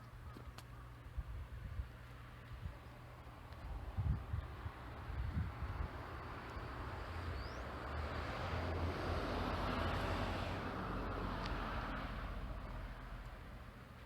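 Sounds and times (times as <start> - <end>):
vehicle passing by: 5.1 - 13.2.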